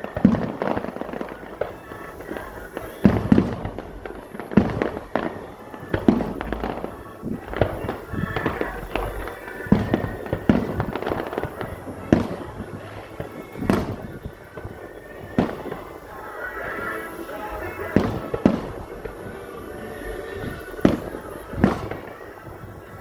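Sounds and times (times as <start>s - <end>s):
firework crackling: 0.0s - 23.0s
firework shells booming: 0.0s - 23.0s.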